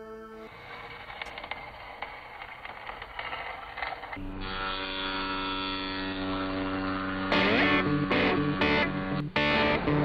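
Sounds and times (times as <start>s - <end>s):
distorted electric guitar music: 4.2s - 10.0s.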